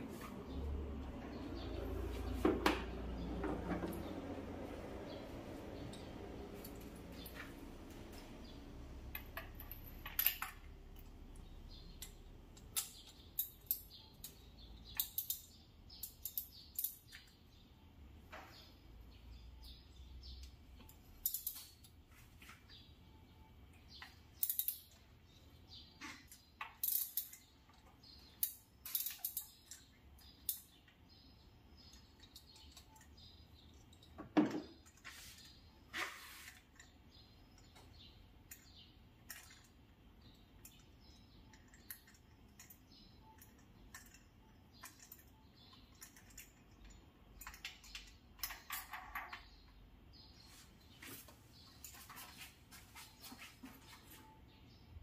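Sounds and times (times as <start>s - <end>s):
hand tools clicking and clinking: 12.0s - 17.3s, 20.8s - 22.0s, 24.0s - 25.0s, 26.0s - 30.8s, 38.5s - 49.5s.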